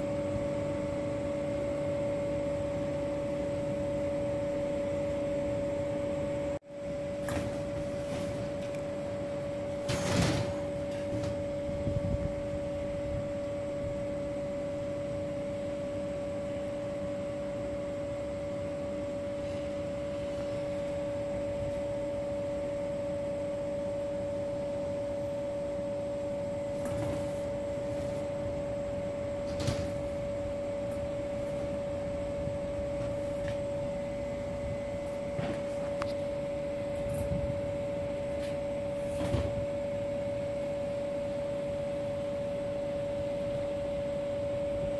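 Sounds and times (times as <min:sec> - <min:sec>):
steady machine hum: 0:00.0 - 0:44.9.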